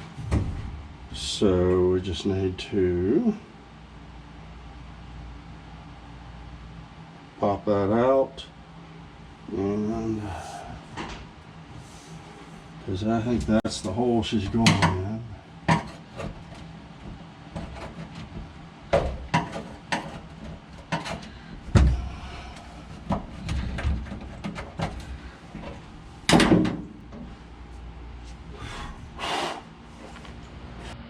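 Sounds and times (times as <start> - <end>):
clicks and knocks of handling: 14.5 - 15.1, 15.7 - 21.9, 22.9 - 27.3.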